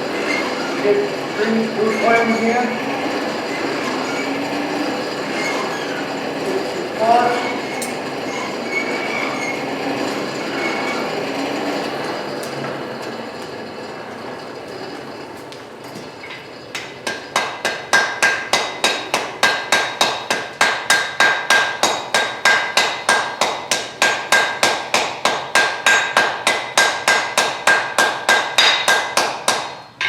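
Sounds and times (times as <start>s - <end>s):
hammer striking steel on anvil: 16.3s - 30.0s.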